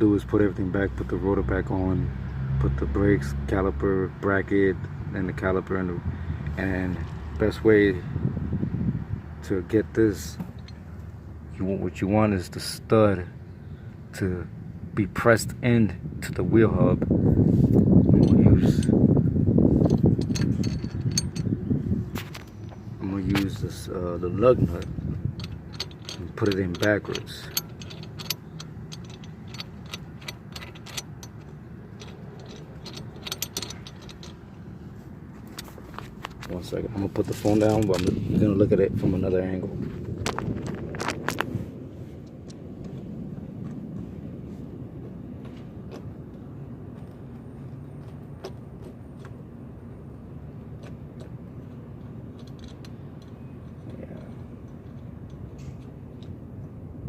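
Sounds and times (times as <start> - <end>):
steady low rumble: 5.3 - 57.0
metallic clicks of lug nut: 18.1 - 19.0, 19.8 - 23.8, 24.5 - 34.6, 50.8 - 56.8.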